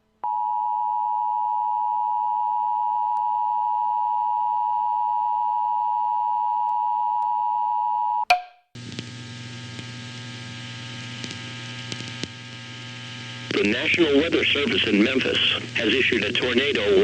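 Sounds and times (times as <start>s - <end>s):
click: 11.2s - 12.4s.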